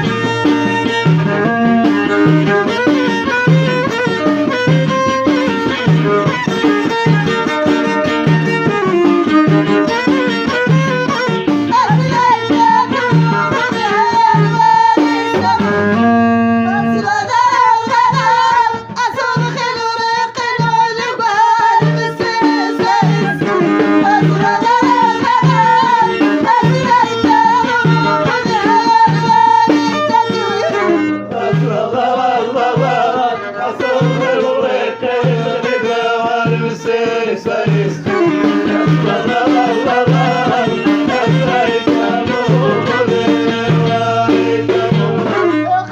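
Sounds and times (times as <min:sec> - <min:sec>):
steady drum beat: 0:00.0 - 0:16.2, 0:16.9 - 0:45.9
folk melody: 0:00.0 - 0:45.9
person singing: 0:11.0 - 0:45.9.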